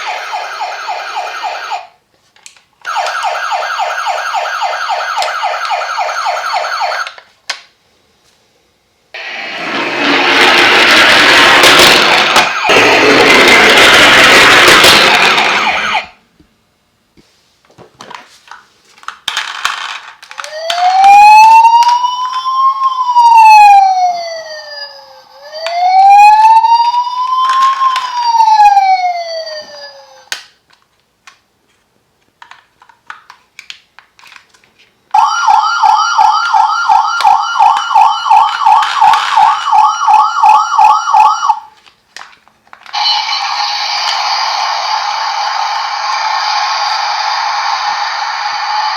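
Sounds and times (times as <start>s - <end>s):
fast warbling toy siren: 0.0s - 1.9s, 2.9s - 7.1s, 11.8s - 16.1s, 20.3s - 30.3s, 35.2s - 41.7s, 42.9s - 48.9s
toy siren wailing: 0.0s - 1.9s, 2.9s - 7.1s, 20.4s - 30.3s, 35.2s - 41.7s, 43.0s - 48.9s.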